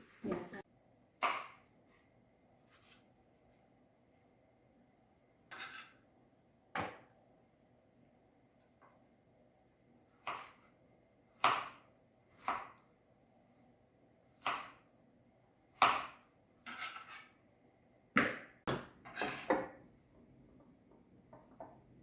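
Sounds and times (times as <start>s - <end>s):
knife chopping on cutting board: 10.2s - 10.6s, 11.4s - 12.8s, 14.4s - 14.8s, 15.7s - 17.2s.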